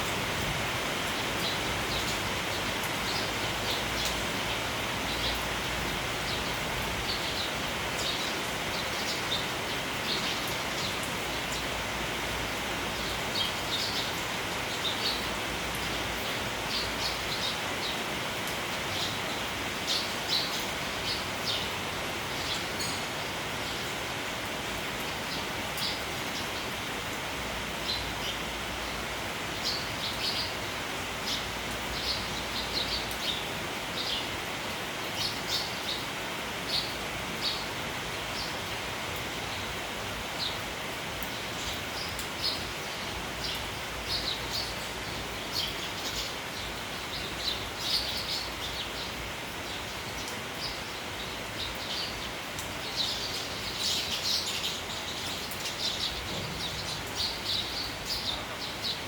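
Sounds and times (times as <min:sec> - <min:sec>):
rain hiss: 0:00.0 - 0:59.0
sparrows chirping: 0:00.7 - 0:24.1, 0:27.7 - 0:34.5, 0:35.1 - 0:38.8, 0:39.4 - 0:59.0.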